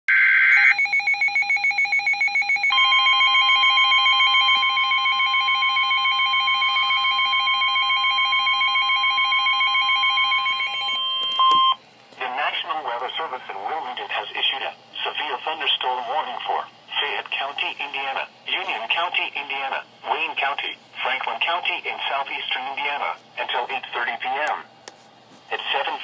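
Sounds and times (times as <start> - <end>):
steady long warning tone: 0.6 - 11.7.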